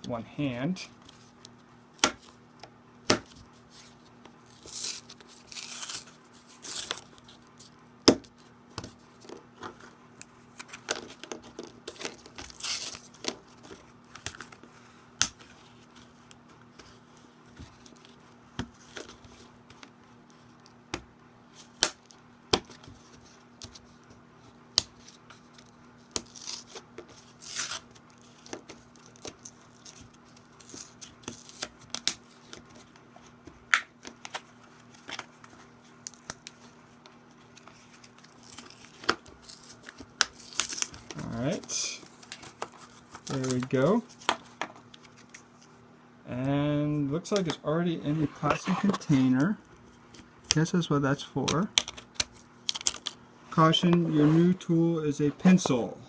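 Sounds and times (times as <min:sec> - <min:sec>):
faint steady hum: 0:00.0 - 0:56.0
packaging crinkling and tearing: 0:04.4 - 0:07.7, 0:10.5 - 0:14.6, 0:24.9 - 0:32.9, 0:37.5 - 0:45.6, 0:51.5 - 0:53.2.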